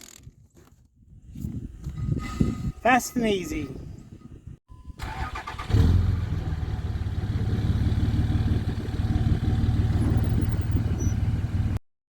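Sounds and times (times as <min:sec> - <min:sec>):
vehicle engine humming: 0:05.0 - 0:11.8.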